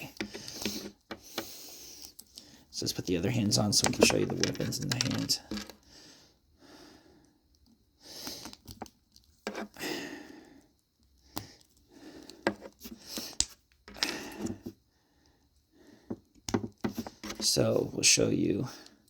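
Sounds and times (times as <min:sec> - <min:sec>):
plastic parts rustling: 0:03.4 - 0:05.8.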